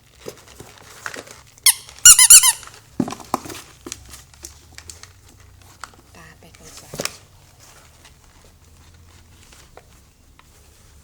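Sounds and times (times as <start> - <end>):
rustling: 0.0 - 11.0
squeaky toy squeaking: 1.6 - 2.8.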